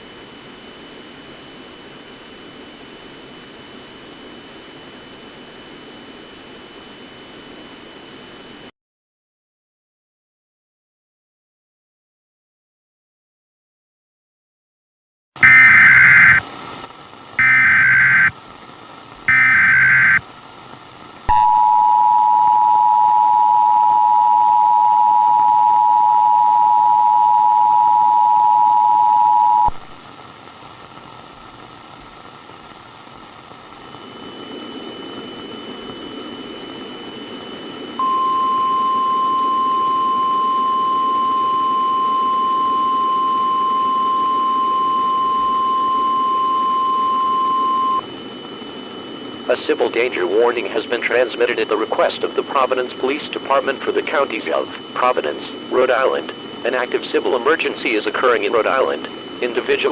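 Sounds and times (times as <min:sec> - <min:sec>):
radio static hiss: 0:00.0 - 0:08.7, 0:15.4 - 0:59.9
screeching data bursts: 0:15.4 - 0:16.4, 0:17.4 - 0:18.4, 0:19.3 - 0:20.2
steady alarm tone: 0:15.4 - 0:16.4, 0:17.4 - 0:18.4, 0:19.3 - 0:20.2, 0:34.8 - 0:59.9
two-tone attention signal: 0:15.4 - 0:16.4, 0:17.4 - 0:18.3, 0:19.3 - 0:20.2, 0:38.0 - 0:48.0.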